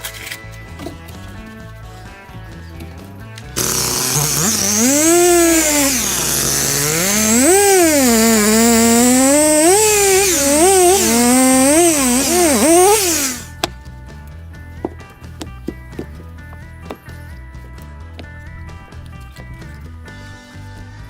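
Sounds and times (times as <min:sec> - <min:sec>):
chainsaw engine revving: 0:03.6 - 0:13.6.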